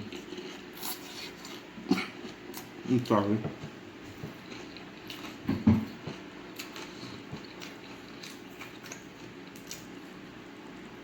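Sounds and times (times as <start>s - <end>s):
chewing with wet mouth clicks: 4.2s - 10.0s.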